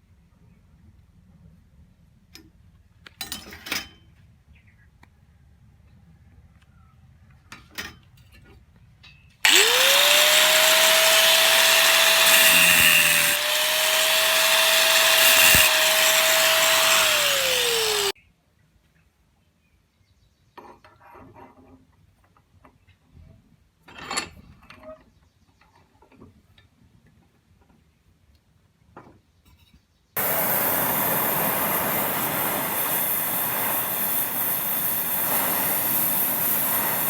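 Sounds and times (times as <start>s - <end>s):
power tool whining: 9.5s - 18.2s, 30.2s - 37.0s.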